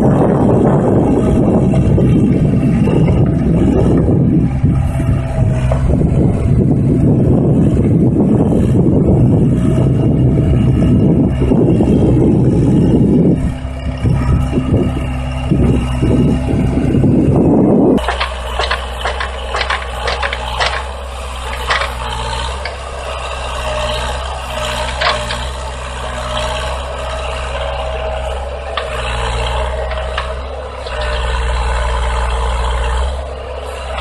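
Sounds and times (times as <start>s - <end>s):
diesel engine running: 0.0s - 34.0s
metallic clanks and rattles: 18.0s - 32.2s.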